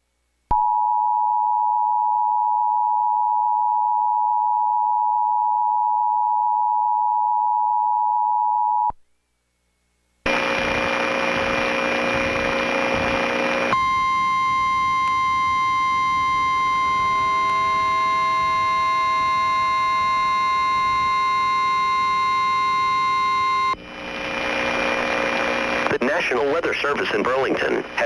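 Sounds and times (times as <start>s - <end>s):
radio static hiss: 10.3s - 28.0s.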